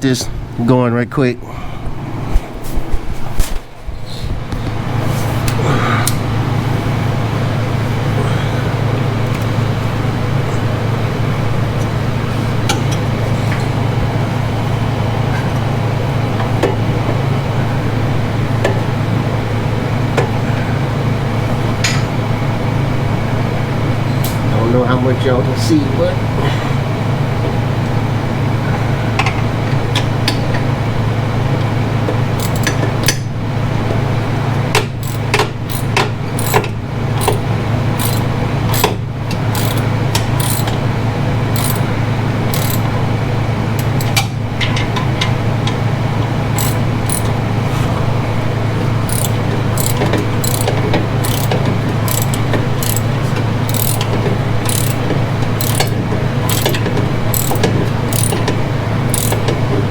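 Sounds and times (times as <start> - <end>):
constant low hum: 0.0 - 59.9
ratchet wrench clicking: 32.4 - 33.2, 35.0 - 37.4, 38.0 - 40.8, 41.6 - 41.8, 42.5 - 42.9, 46.6 - 47.3, 49.1 - 53.1, 53.7 - 55.0, 55.6 - 58.5, 59.1 - 59.5.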